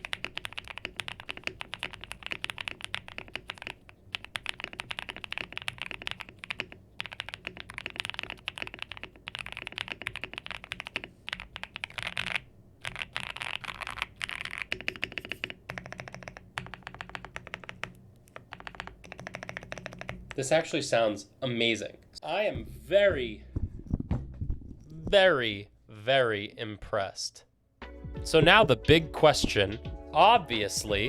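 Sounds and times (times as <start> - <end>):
mechanical keyboard typing: 0.0 - 20.6.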